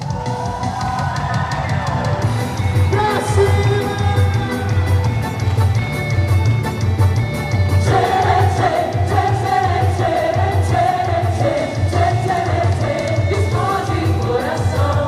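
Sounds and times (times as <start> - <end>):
pulsing bass beat: 0.0 - 15.0
voices singing a melody: 7.8 - 15.0.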